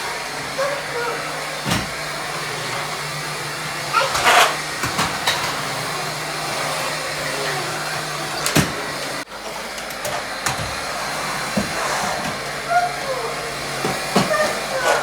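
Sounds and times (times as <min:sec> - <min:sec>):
vacuum cleaner running: 0:00.0 - 0:15.0
vacuum cleaner knocks and bumps: 0:01.6 - 0:02.0, 0:11.5 - 0:12.4.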